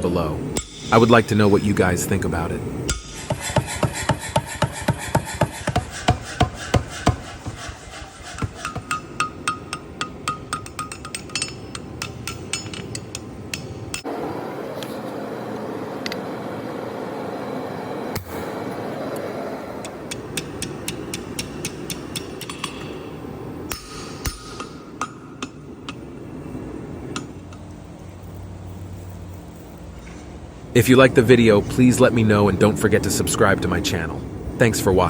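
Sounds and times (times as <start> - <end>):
steady noise: 0.0 - 35.0
hammer striking hot steel: 0.4 - 14.1, 19.8 - 26.1.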